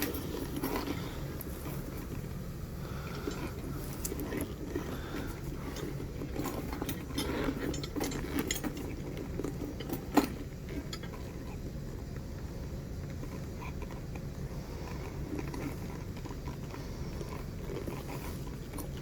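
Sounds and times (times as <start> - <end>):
straps pulled through buckles: 0.0 - 2.3, 3.0 - 11.6, 15.0 - 19.0
metal fittings clinking: 5.6 - 11.2.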